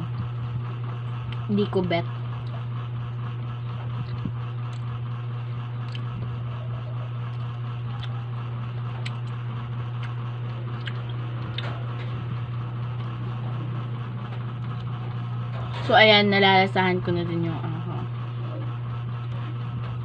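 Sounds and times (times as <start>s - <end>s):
fan humming: 0.0s - 20.0s
chewing with mouth clicks: 5.8s - 6.3s, 7.2s - 11.8s.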